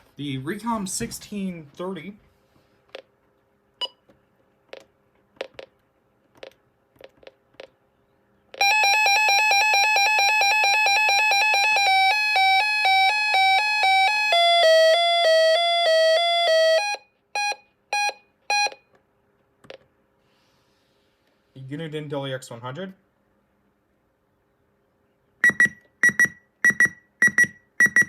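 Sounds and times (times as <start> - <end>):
electronic alarm pulsing beeps: 16.6 - 18.9, 25.4 - 28.0
short single beeps: 25.4 - 28.0.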